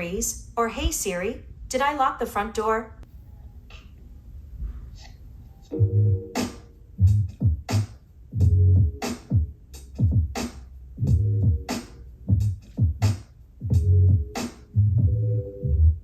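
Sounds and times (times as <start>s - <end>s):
electronic music with drum-machine beat: 5.7s - 16.0s.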